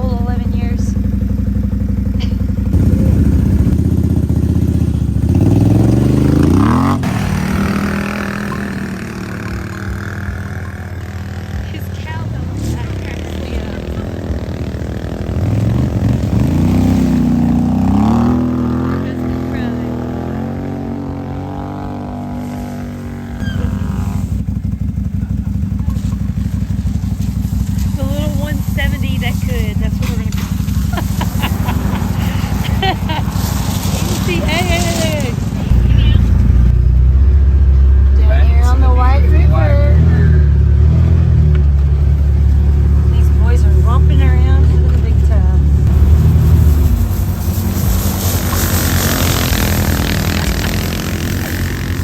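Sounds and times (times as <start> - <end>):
small off-road engines revving: 0.0 - 52.0.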